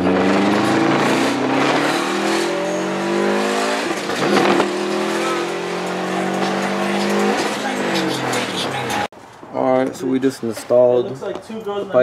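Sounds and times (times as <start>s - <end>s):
car engine accelerating: 0.0s - 9.1s.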